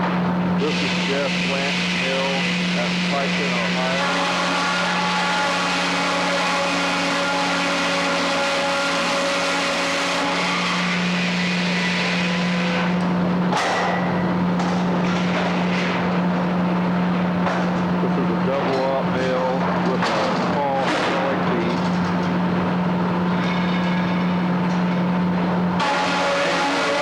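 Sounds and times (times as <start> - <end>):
sawmill mechanical drone: 0.0 - 27.0
knocks and clatter: 13.5 - 18.0, 18.6 - 25.0.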